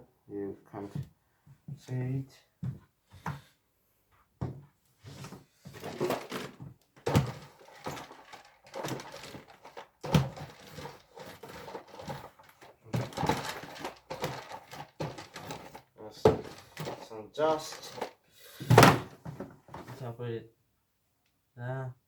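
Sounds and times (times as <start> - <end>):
objects knocking and thunking: 4.4 - 20.1
objects rustling: 4.5 - 20.2.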